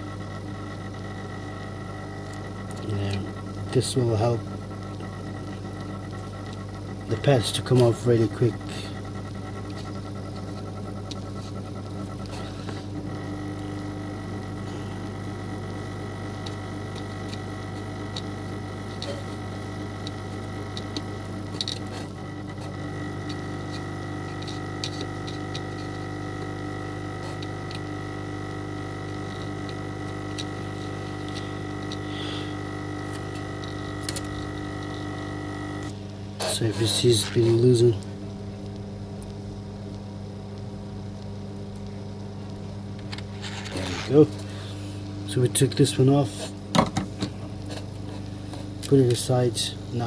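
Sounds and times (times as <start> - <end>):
hot air gun blower humming: 0.0 - 39.4, 40.3 - 50.0.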